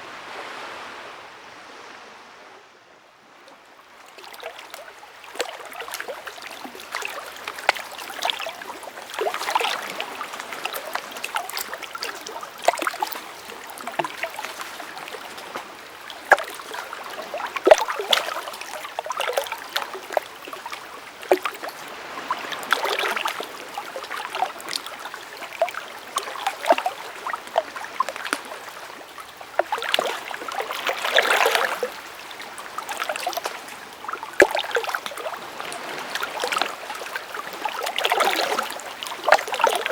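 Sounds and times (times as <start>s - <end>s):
stream babbling over stones: 4.3s - 39.9s.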